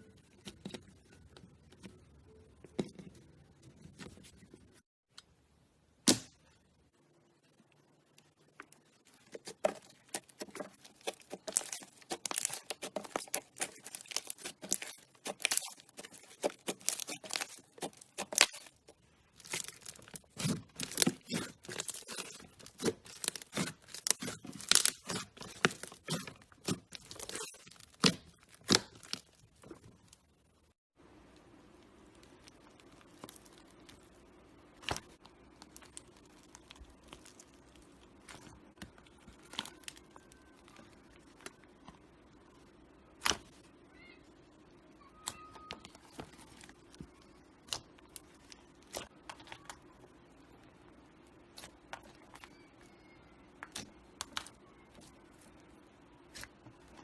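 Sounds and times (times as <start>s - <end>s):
slime squishing and popping: 9.3s - 29.9s, 51.3s - 55.0s.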